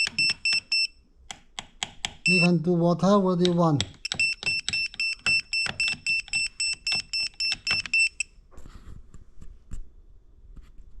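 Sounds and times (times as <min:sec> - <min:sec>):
high-pitched electronic beeps: 0:00.0 - 0:00.9, 0:02.3 - 0:02.6, 0:04.0 - 0:08.2.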